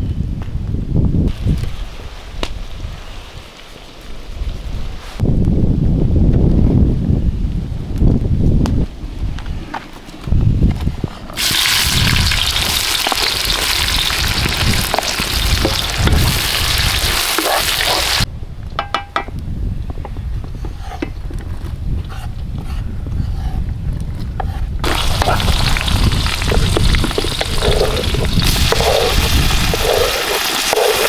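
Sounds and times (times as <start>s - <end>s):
wind buffeting microphone: 0.0s - 31.0s
food sizzling in hot fat: 11.4s - 18.3s, 24.8s - 31.0s.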